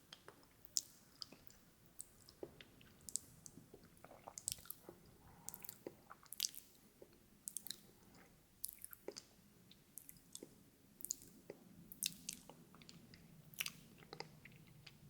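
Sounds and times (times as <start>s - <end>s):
wet mouth clicks and smacks: 10.0s - 11.3s.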